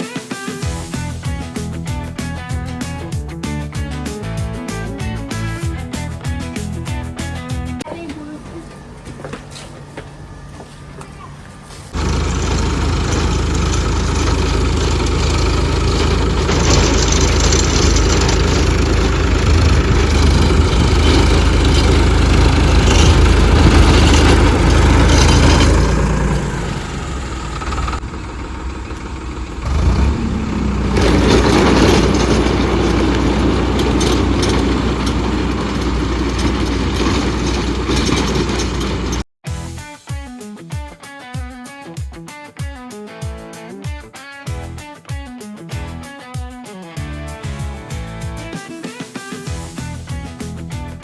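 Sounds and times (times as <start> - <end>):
tractor engine running: 11.8 - 39.3.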